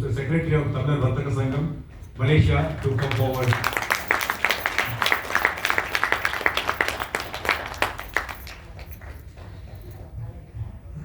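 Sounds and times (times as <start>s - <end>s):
audience applauding: 2.6s - 9.8s.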